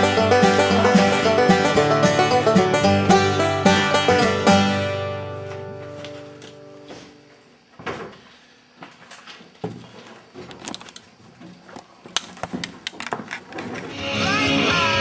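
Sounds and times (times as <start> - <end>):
music chord: 0.0 - 7.0.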